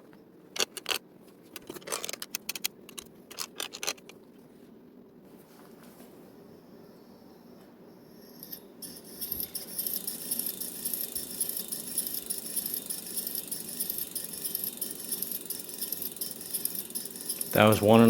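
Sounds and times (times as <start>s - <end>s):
bicycle wheel ticking rattle: 8.4s - 18.0s.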